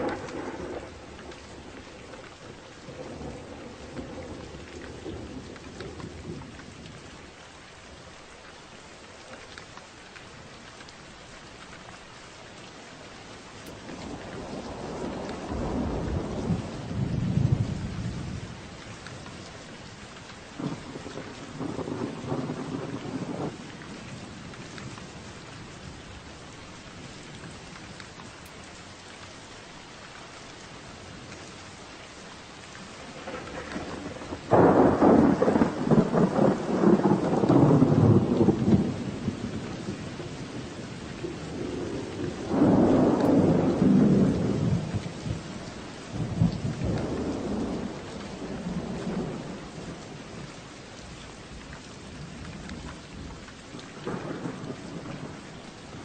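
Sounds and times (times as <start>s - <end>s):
thunder rumbling: 0.0s - 7.1s, 13.6s - 19.8s, 20.5s - 26.0s, 32.9s - 50.5s, 52.2s - 56.0s
steady rain: 0.0s - 56.0s.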